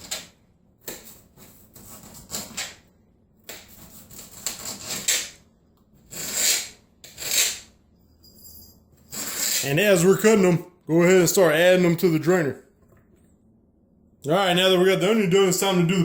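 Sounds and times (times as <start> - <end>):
knife slicing onion on board: 3.4 - 5.4.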